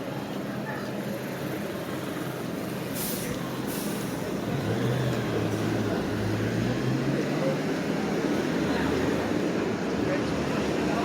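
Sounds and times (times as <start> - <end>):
large vehicle engine humming: 0.1 - 11.0
air brake hisses: 3.0 - 4.2.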